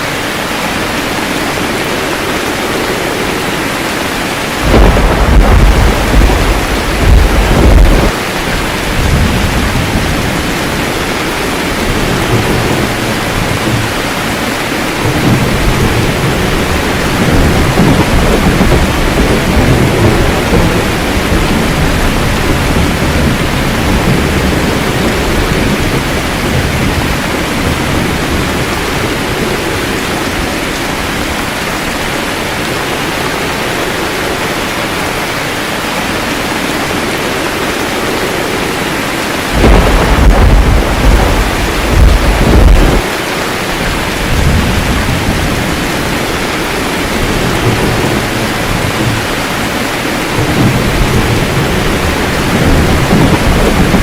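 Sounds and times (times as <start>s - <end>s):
steady rain: 0.0s - 54.0s
rolling thunder: 4.3s - 31.5s, 37.2s - 54.0s.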